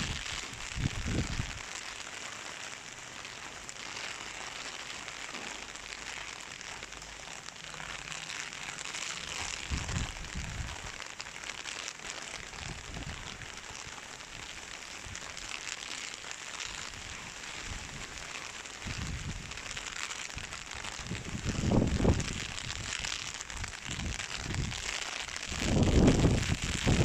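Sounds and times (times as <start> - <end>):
wind gusting on microphone: 0.0 - 1.6, 9.4 - 10.9, 12.5 - 13.6, 18.8 - 19.8, 20.4 - 27.0
heavy rain falling: 0.0 - 27.0.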